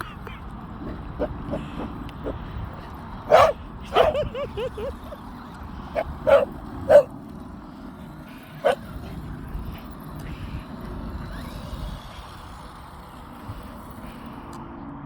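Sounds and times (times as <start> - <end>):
dog barking: 0.8 - 2.4, 3.3 - 5.2, 5.9 - 7.1, 8.6 - 8.8
dog yipping: 0.8 - 2.4, 3.3 - 5.2, 6.0 - 7.1, 8.6 - 8.8.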